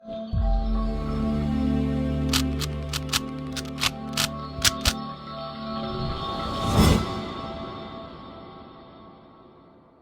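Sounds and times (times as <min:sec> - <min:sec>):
ambient intro music: 0:00.0 - 0:10.0
sharp clicks: 0:02.3 - 0:05.0.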